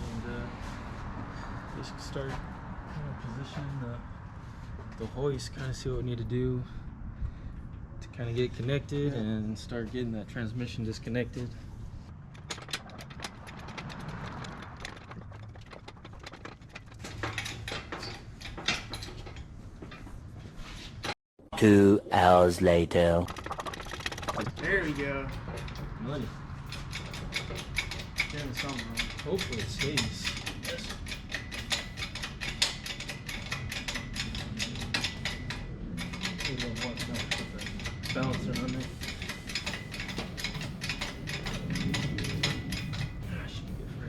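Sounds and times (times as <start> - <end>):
hand tools clicking and clanking: 12.1 - 19.5, 23.4 - 44.0.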